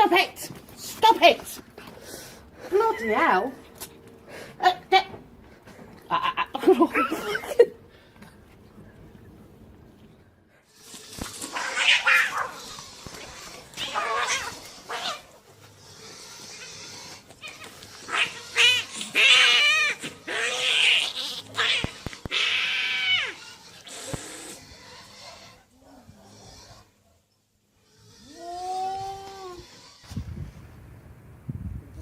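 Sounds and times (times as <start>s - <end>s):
cats yowling in a fight: 11.4s - 15.4s, 17.4s - 23.4s.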